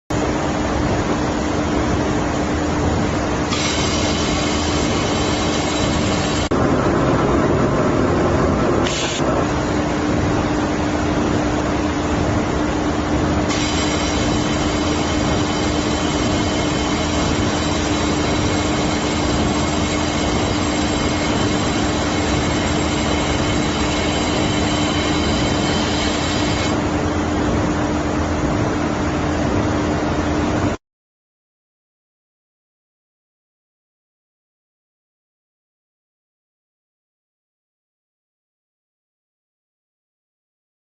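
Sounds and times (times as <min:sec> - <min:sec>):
high multi-tone machine whine: 0:00.2 - 0:30.7
laser welding machine hissing: 0:03.5 - 0:06.6, 0:08.8 - 0:09.4, 0:13.4 - 0:26.8.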